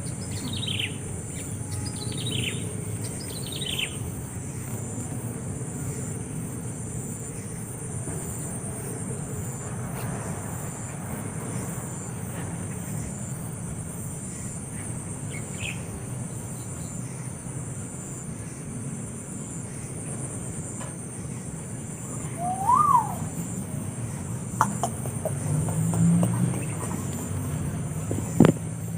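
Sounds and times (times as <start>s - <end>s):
insect trill chorus: 0.0s - 28.9s
high chirp: 22.2s - 23.4s.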